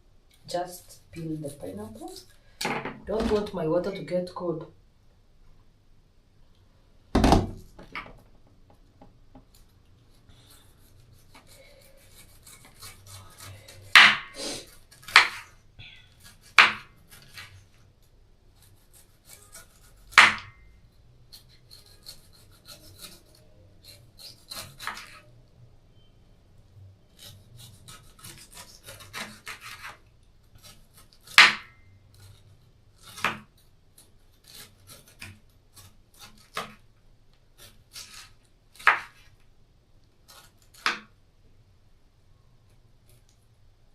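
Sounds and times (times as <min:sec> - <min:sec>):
knife rasping through pineapple rind: 0:00.7 - 0:02.4, 0:09.5 - 0:17.7, 0:18.5 - 0:20.3, 0:21.2 - 0:25.3, 0:27.1 - 0:31.4, 0:32.1 - 0:36.9, 0:37.5 - 0:39.4, 0:40.2 - 0:40.9
knife knocking on chopping board: 0:07.2 - 0:07.6.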